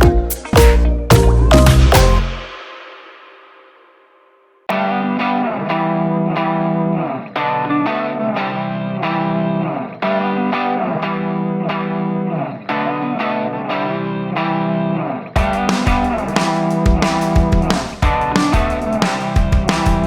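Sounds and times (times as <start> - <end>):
guitar playing sustained chords: 4.7 - 15.2.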